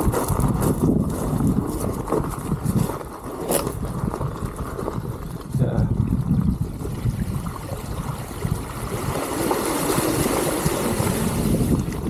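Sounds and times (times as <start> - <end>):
water splashing around bike tyres: 6.2 - 12.0.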